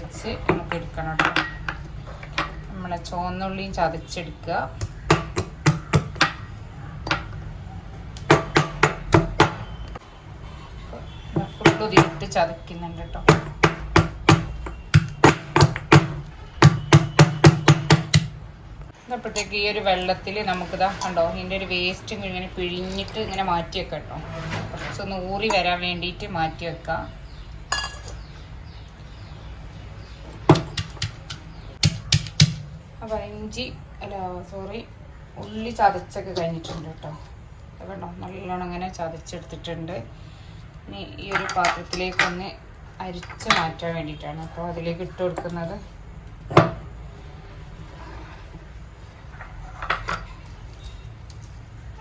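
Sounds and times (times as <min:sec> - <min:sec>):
pestle pounding shallots: 0:04.8 - 0:06.4, 0:08.2 - 0:09.7, 0:11.4 - 0:12.3, 0:13.3 - 0:18.4, 0:30.5 - 0:32.8.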